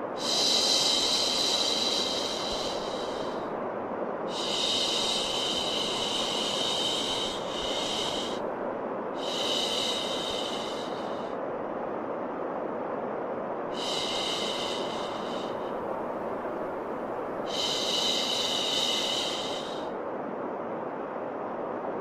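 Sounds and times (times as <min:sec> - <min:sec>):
steady white noise: 0:00.0 - 0:22.0.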